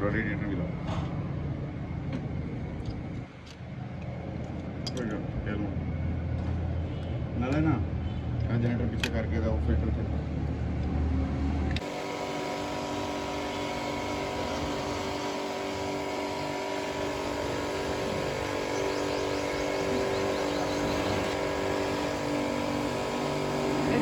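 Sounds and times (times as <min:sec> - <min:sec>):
motor humming: 0:11.8 - 0:24.0.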